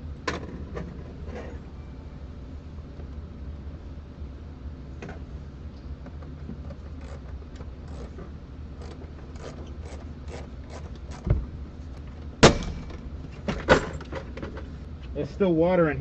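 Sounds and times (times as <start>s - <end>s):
low hum: 0.0s - 16.0s
clicks and scrapes of car parts: 0.2s - 1.7s, 6.0s - 14.8s
dull thump: 12.4s - 13.9s.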